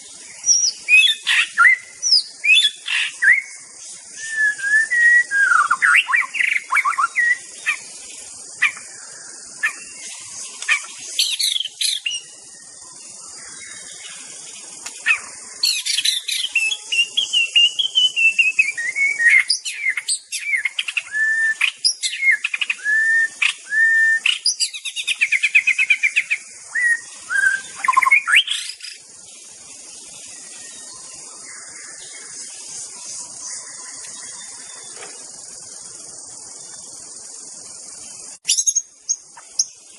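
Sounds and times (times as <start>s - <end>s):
steady high hiss: 0.0s - 39.9s
bird singing whistled phrases: 0.4s - 7.8s, 15.1s - 29.0s, 38.4s - 39.8s.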